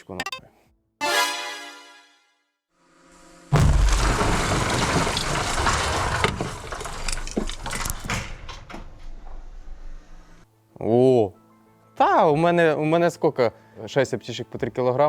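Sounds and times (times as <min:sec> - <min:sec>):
explosion blast with deep rumble: 0:03.5 - 0:10.3
debris crackling and rattling: 0:03.5 - 0:10.4.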